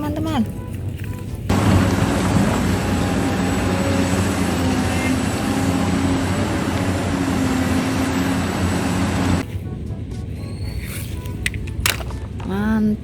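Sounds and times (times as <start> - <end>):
engine rumble with low hum: 1.2 - 10.2.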